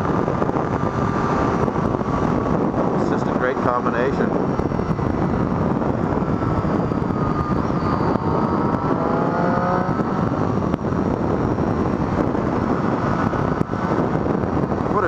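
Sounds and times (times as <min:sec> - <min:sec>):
motorcycle engine running: 0:00.0 - 0:15.0
wind rush: 0:00.0 - 0:15.0.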